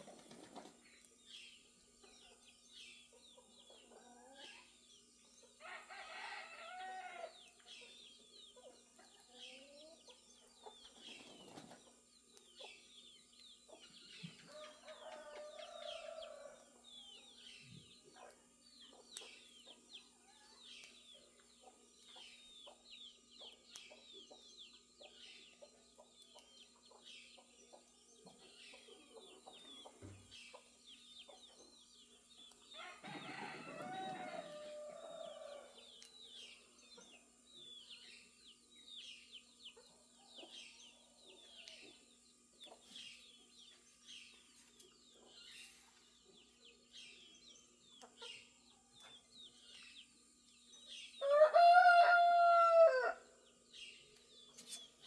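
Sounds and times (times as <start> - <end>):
small birds chirping: 0.0 - 55.0
rooster crowing: 5.6 - 7.3, 14.6 - 16.6, 32.8 - 35.8, 51.2 - 53.2.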